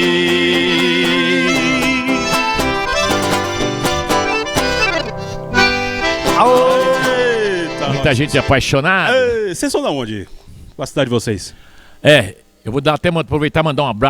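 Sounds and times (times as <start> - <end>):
band playing quick runs: 0.0 - 9.0.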